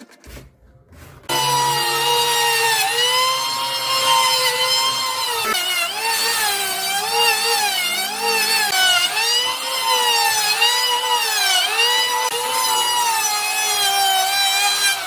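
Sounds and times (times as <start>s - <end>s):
power tool motor whining: 1.3s - 15.0s.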